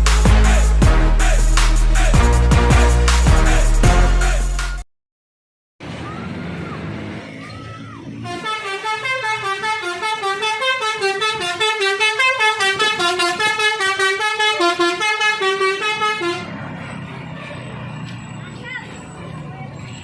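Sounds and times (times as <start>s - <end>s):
bus horn playing notes: 8.2s - 16.8s.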